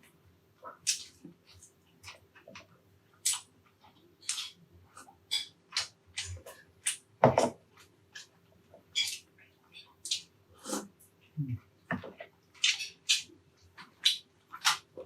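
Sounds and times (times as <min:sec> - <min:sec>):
wet chewing and lip-smacking: 0:12.2 - 0:14.9.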